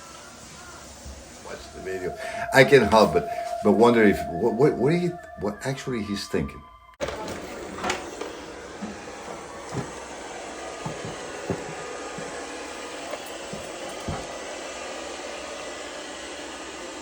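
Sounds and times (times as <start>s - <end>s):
robot vacuum whirring: 7.0s - 17.0s.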